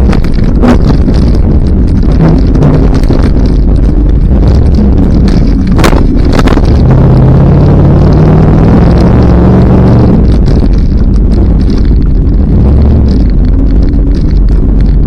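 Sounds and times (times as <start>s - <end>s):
truck engine revving: 0.0s - 15.0s.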